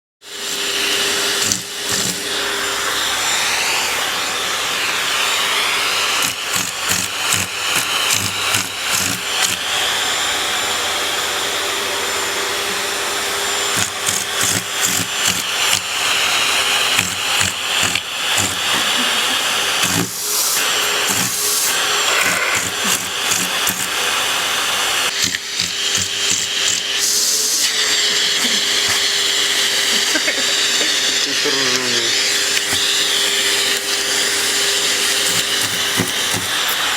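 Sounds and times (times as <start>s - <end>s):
vacuum cleaner running: 0.2s - 36.9s.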